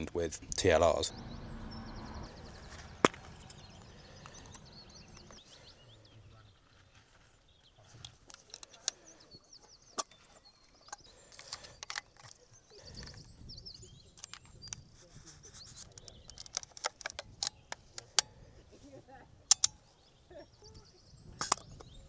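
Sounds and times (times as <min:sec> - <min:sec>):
small birds chirping: 0:00.0 - 0:22.0
sharp clicks: 0:00.5 - 0:05.5, 0:15.5 - 0:18.3, 0:19.5 - 0:19.8, 0:21.4 - 0:22.0.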